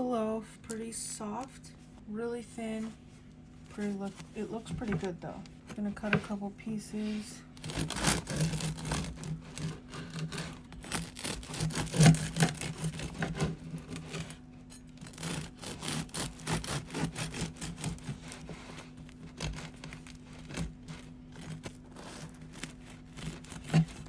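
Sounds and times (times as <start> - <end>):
knife sawing through bread: 7.0 - 24.0.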